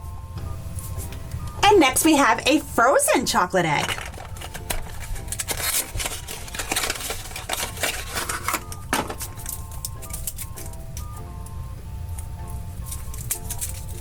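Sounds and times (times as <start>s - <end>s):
light music: 0.0s - 14.0s
foil wrapper crinkling: 3.6s - 10.9s, 12.8s - 14.0s.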